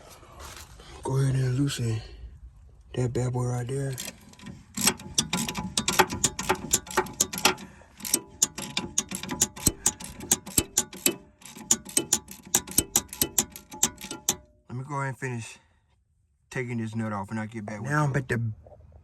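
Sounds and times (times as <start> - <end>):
ratchet wrench clicking: 3.9 - 14.5.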